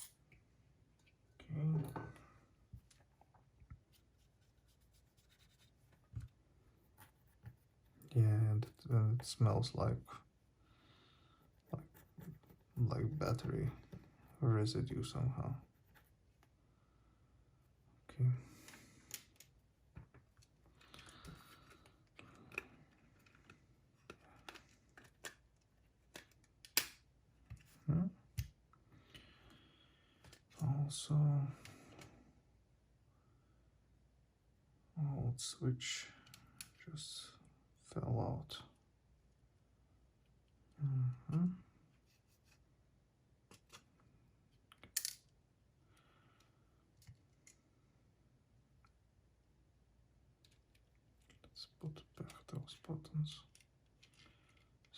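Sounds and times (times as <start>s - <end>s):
small clicks of parts and tools: 26.1s - 27.7s, 44.7s - 45.4s, 46.4s - 47.7s.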